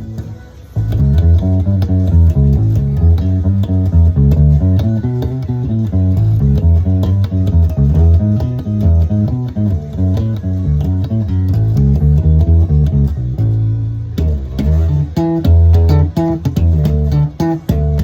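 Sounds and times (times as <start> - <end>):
bass guitar plucked notes: 0.0 - 18.0.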